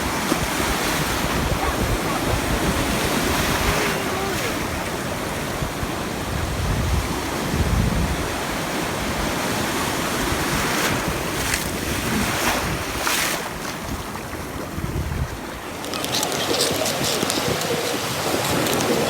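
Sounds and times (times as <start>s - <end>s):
ocean surf breaking: 0.0s - 19.0s
wind buffeting microphone: 0.0s - 19.0s.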